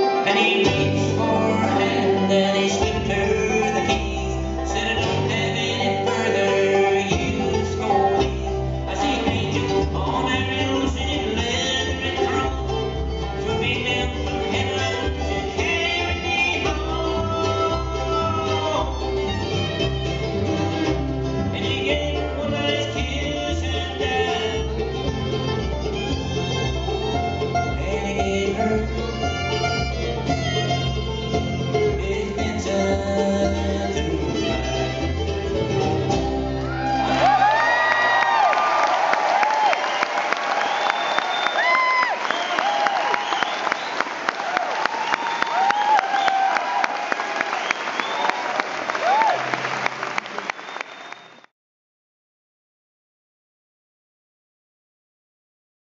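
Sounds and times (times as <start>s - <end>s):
bluegrass band playing: 0.0s - 44.6s
audience applause: 36.5s - 51.5s
loud whistling: 39.7s - 46.7s, 47.4s - 48.5s, 50.3s - 51.5s.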